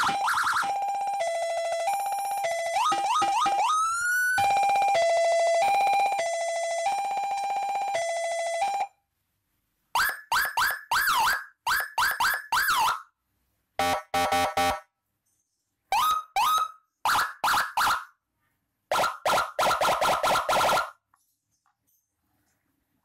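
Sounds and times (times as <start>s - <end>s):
siren chirping yelps: 0.0s - 8.9s, 10.0s - 13.1s, 15.9s - 18.1s
two-tone hi-lo siren: 0.0s - 8.9s, 10.0s - 13.1s, 13.8s - 14.8s, 18.9s - 21.0s.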